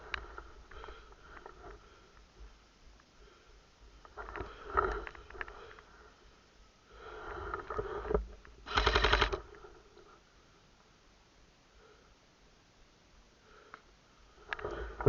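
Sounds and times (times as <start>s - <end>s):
airsoft gun full-auto burst: 8.7s - 9.4s
scattered clicks: 8.7s - 9.5s.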